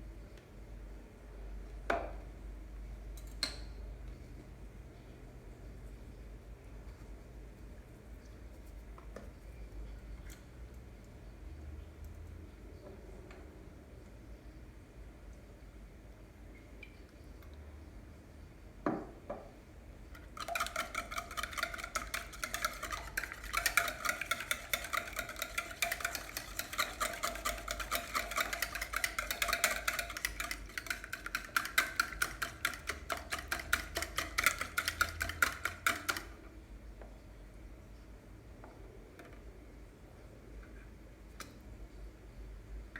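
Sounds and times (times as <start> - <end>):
utensil beating in a ringing bowl: 20.2 - 36.2.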